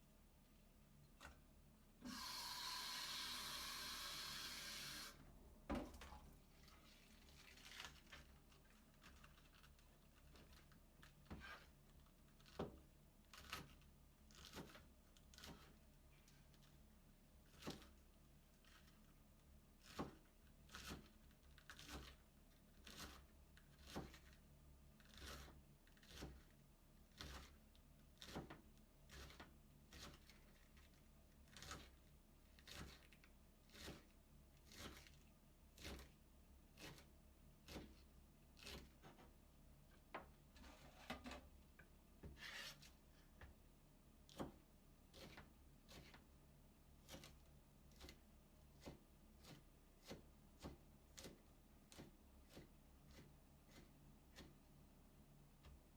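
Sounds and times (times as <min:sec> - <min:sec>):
knife shredding cabbage on board: 0:06.6 - 0:39.4, 0:44.3 - 0:46.4, 0:47.0 - 0:54.7.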